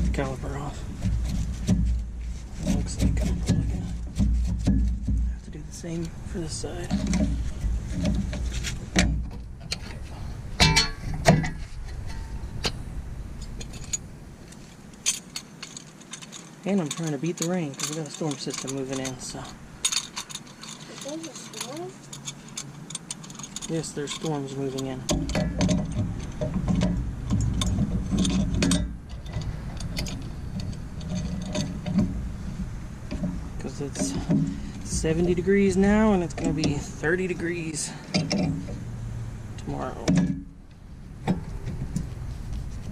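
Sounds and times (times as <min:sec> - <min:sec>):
tools clanking on metal brake parts: 0:00.0 - 0:10.0, 0:10.6 - 0:12.8, 0:13.4 - 0:38.9, 0:39.5 - 0:42.9
low rumble: 0:00.0 - 0:15.6
low background rumble: 0:00.0 - 0:42.9
metallic clinks of hand tools: 0:15.0 - 0:26.5.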